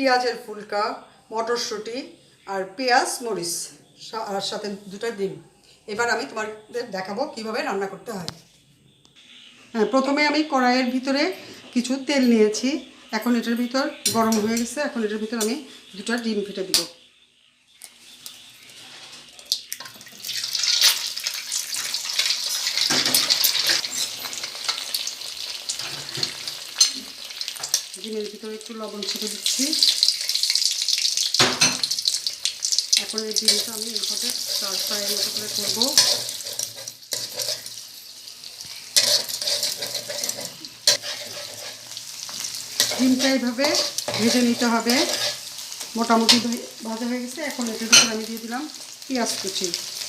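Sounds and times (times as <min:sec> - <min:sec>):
eggs sizzling in hot oil: 0:09.2 - 0:50.0
spatula scraping a pan: 0:20.3 - 0:27.8, 0:33.4 - 0:46.6.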